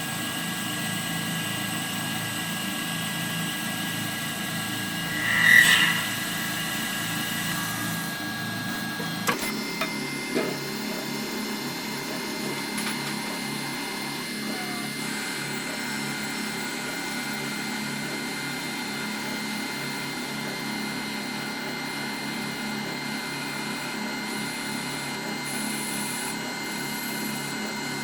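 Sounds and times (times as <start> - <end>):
workshop machinery humming: 0.0 - 15.8
high machine whine: 0.0 - 28.0
machine squeal: 1.0 - 10.0.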